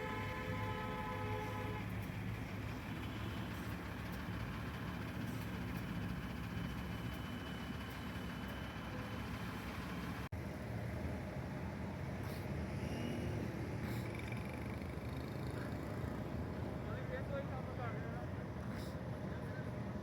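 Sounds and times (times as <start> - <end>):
vehicle horn: 0.0 - 1.9
bus engine idling: 0.0 - 12.5.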